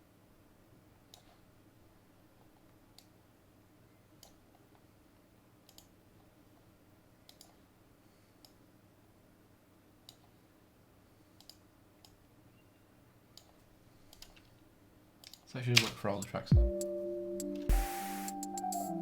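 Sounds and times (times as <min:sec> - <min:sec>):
computer mouse clicks: 0:01.1 - 0:01.4, 0:04.2 - 0:04.8, 0:05.6 - 0:06.0, 0:07.3 - 0:07.7, 0:08.4 - 0:08.6, 0:10.0 - 0:10.4, 0:11.4 - 0:12.2, 0:13.3 - 0:14.6, 0:15.2 - 0:15.9.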